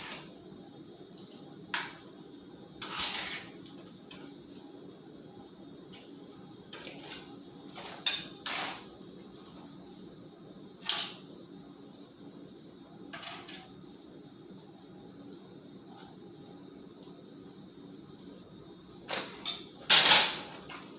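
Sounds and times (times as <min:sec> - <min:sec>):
metal utensils clinking on cookware: 0:07.8 - 0:08.8, 0:19.1 - 0:20.8.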